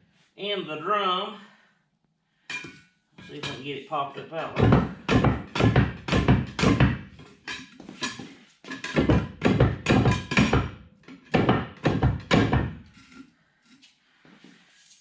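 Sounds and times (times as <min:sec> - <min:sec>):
hammer blows on metal hub: 0:02.5 - 0:07.4.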